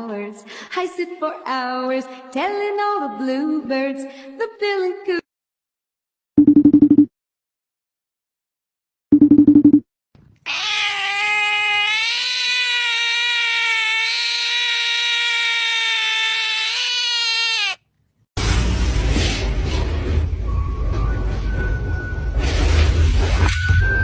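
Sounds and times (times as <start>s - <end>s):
cat yowling: 10.5s - 17.8s
loud noisy rumble: 18.4s - 23.5s.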